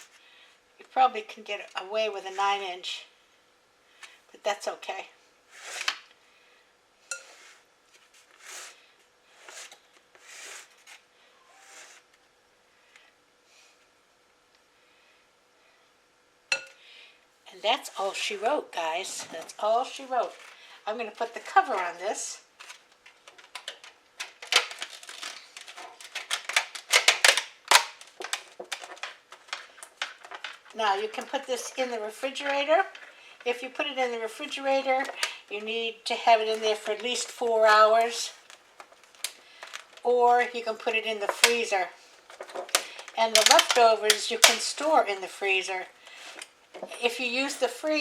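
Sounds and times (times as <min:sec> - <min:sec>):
utensil scraping a bowl: 0:07.1 - 0:07.7
plastic cover crinkling: 0:17.8 - 0:47.8.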